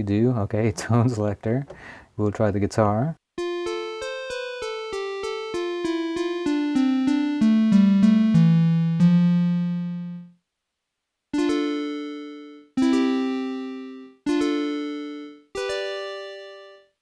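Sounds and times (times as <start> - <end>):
keyboard guitar tone run: 3.4 - 10.3, 11.4 - 16.8
plucked chords: 3.4 - 10.3, 11.4 - 16.9.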